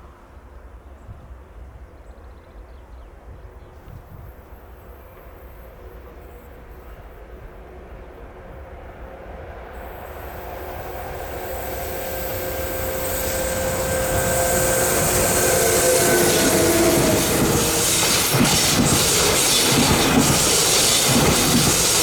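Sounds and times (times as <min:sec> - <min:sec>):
electric train approaching: 0:08.4 - 0:22.0
whining tones: 0:10.3 - 0:22.0
wheels clacking over rails: 0:11.0 - 0:22.0.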